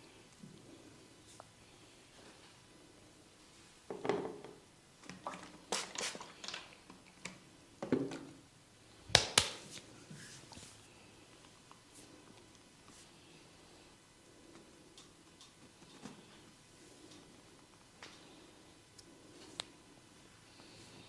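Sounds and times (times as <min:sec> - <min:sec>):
sharp snaps: 0:09.1 - 0:09.6
hair crackling and popping: 0:09.1 - 0:09.9.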